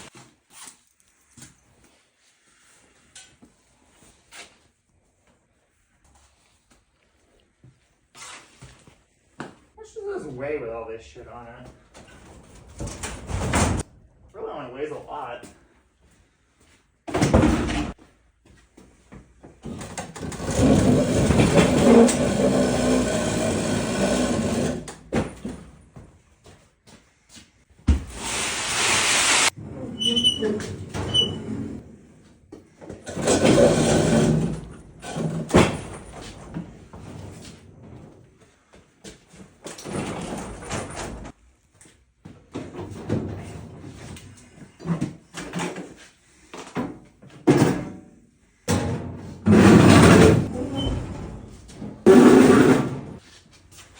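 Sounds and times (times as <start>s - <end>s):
table scraping across floor: 20.3s - 24.9s, 27.9s - 31.9s, 33.1s - 35.3s, 49.4s - 53.2s
short squeaks: 29.9s - 31.5s.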